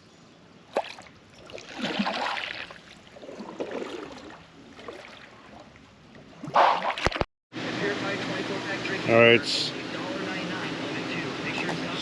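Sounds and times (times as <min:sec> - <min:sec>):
paddle swishing water: 0:00.7 - 0:07.2.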